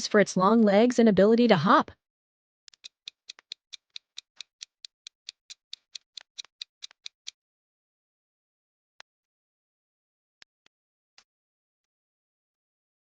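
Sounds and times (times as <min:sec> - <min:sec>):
clock ticking fast: 0:02.7 - 0:07.3.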